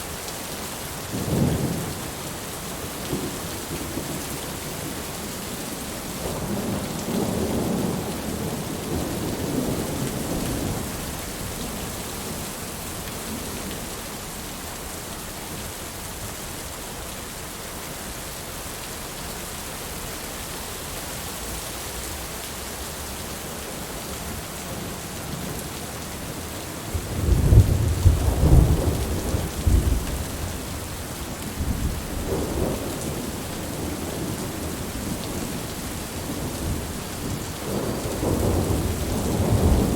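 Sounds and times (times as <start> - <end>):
heavy rain: 0.0 - 39.9
rolling thunder: 26.8 - 39.9.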